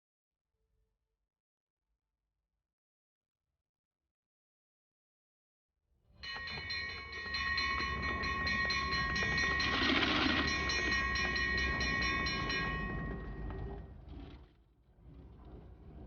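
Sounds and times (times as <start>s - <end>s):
train rumble: 6.2s - 16.0s.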